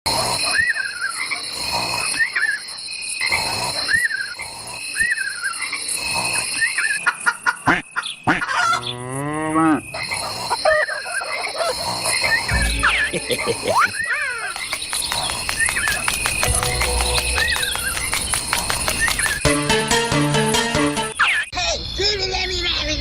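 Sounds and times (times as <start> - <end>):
high insect drone: 0.1 - 7.3, 8.8 - 19.4
farm animal calls: 6.2 - 14.4
long low bending call: 16.4 - 18.1.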